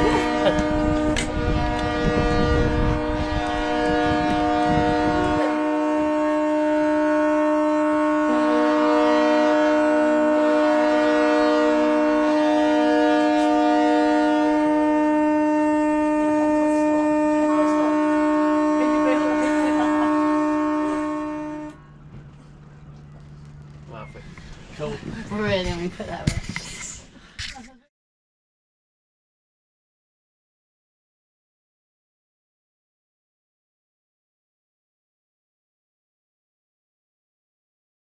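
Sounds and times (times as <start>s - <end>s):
higher-pitched boat horns: 0.0s - 22.1s
low ship horn blast: 0.0s - 24.0s.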